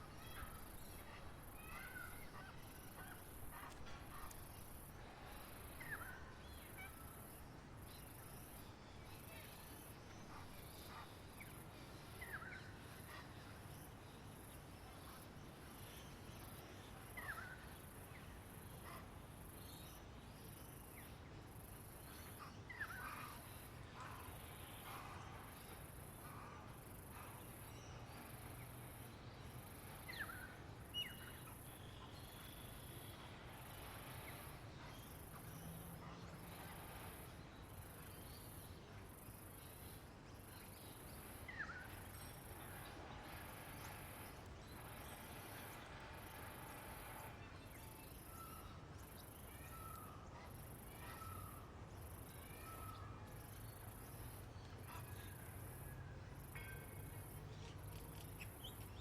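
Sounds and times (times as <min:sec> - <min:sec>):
bird calls: 0:00.0 - 0:07.1.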